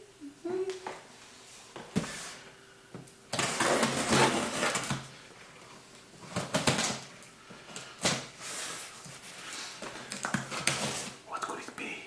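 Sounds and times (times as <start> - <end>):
cardboard package being cut open: 3.3 - 5.0.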